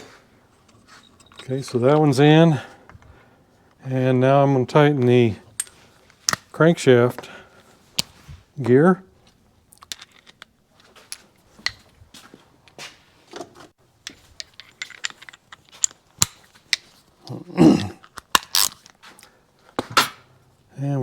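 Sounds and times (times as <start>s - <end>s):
metal tools clattering: 0.0s - 3.0s, 14.0s - 17.0s
metal parts clinking: 0.0s - 3.1s, 5.5s - 6.6s, 9.7s - 11.9s, 13.9s - 17.2s, 18.0s - 19.0s.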